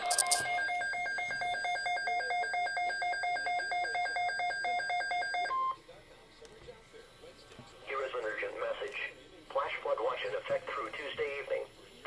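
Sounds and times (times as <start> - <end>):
warbling electronic data tones: 0.0 - 2.6.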